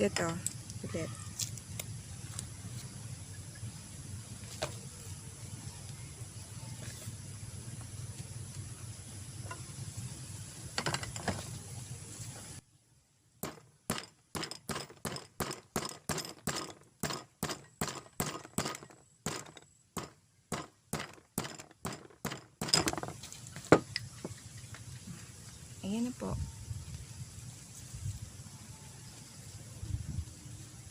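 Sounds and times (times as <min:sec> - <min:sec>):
steady background noise: 0:00.0 - 0:30.9
hammer tapping a nail: 0:13.4 - 0:23.0.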